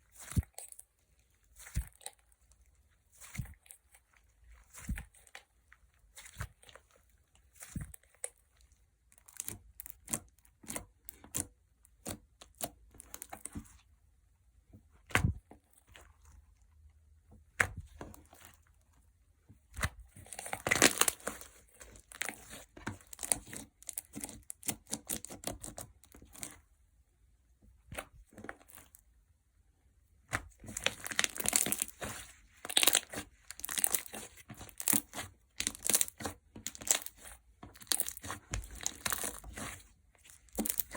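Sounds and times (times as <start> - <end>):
slime clicking and popping: 37.8 - 39.6, 40.4 - 40.9.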